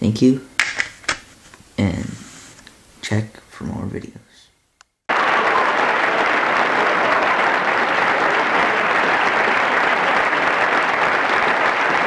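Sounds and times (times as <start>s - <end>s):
crowd applauding: 5.1s - 12.0s.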